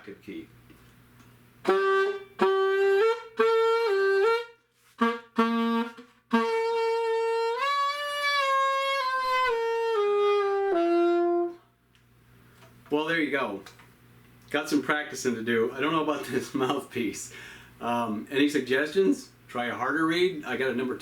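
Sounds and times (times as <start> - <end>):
alto saxophone notes: 1.6 - 11.7.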